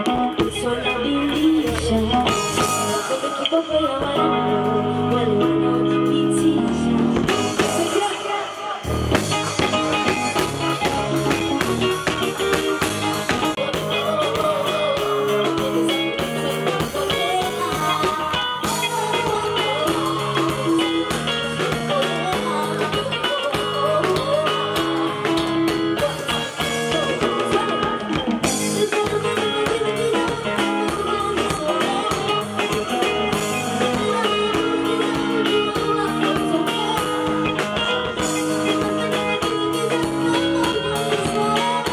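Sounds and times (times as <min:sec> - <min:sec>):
band with guitar and drums: 0:00.0 - 0:41.9
person singing: 0:00.0 - 0:41.9.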